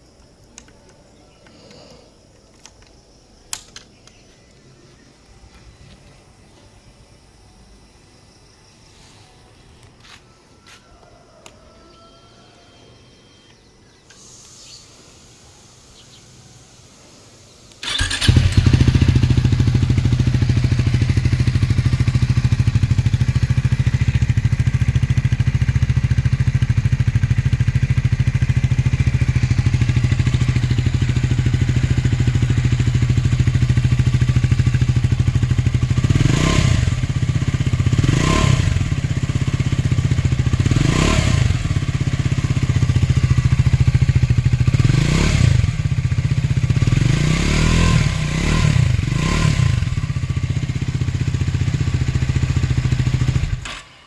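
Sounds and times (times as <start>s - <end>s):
motorcycle engine blips: 14.0s - 54.0s
motorcycle engine starting and idling: 14.0s - 54.0s.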